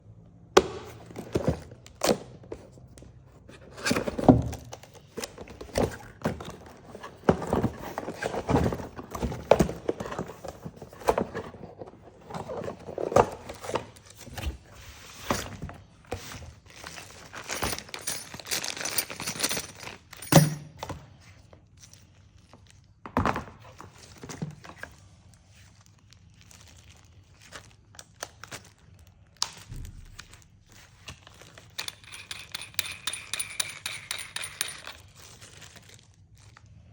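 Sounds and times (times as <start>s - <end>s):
packaging rustling and crinkling: 1.0s - 20.2s, 21.1s - 23.0s, 23.6s - 31.8s, 35.0s - 36.9s
hammer drill being handled: 31.3s - 35.4s.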